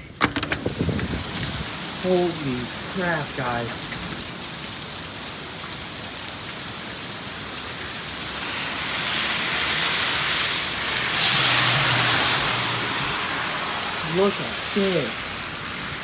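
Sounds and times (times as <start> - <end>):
heavy rain pouring: 0.4 - 16.0
gusty wind: 0.5 - 4.7.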